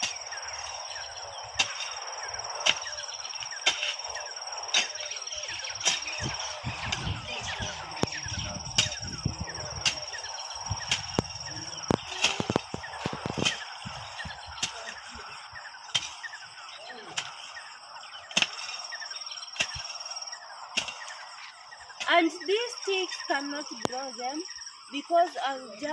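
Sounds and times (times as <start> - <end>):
hoe striking ground: 0.0 - 20.1, 20.8 - 21.4
high insect trill: 0.0 - 25.9.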